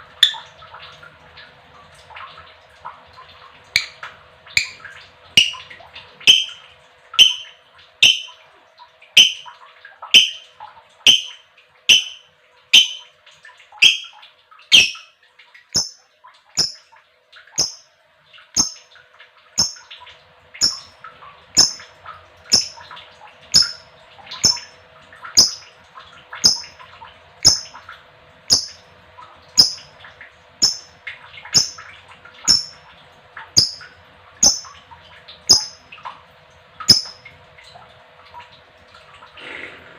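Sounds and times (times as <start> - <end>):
lovebird chirping: 5.4 - 5.6, 6.3 - 6.6, 7.2 - 8.4, 9.2 - 9.5, 10.2 - 10.4, 11.1 - 12.2, 12.8 - 13.1, 13.8 - 15.1, 15.8 - 16.0, 16.6 - 16.8, 17.6 - 17.8, 18.6 - 18.8, 19.6 - 19.8, 20.6 - 20.9, 21.6 - 21.8, 22.5 - 22.8, 23.6 - 23.8, 24.4 - 24.7, 25.4 - 25.6, 26.4 - 26.7, 27.4 - 27.7, 28.5 - 28.8, 29.6 - 29.9, 30.6 - 30.9, 31.6 - 31.8, 32.5 - 32.8, 33.6 - 33.8, 34.4 - 34.7, 35.5 - 35.8, 36.9 - 37.2.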